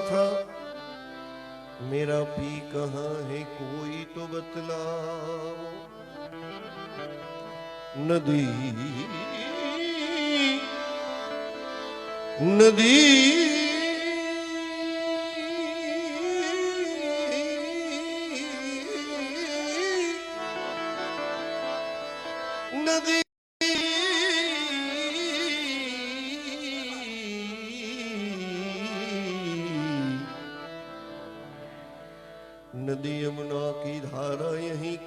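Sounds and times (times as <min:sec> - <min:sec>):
man singing devotional song: 0:00.0 - 0:21.6, 0:22.6 - 0:31.5, 0:32.7 - 0:35.0
held instrumental accompaniment: 0:00.0 - 0:35.0.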